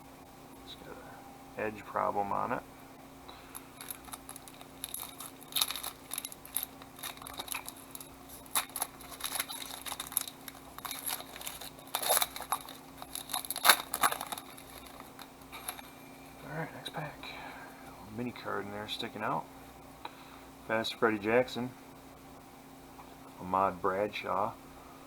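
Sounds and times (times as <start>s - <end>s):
cards rustling: 3.3s - 15.9s
foil wrapper crinkling and tearing: 3.4s - 15.9s.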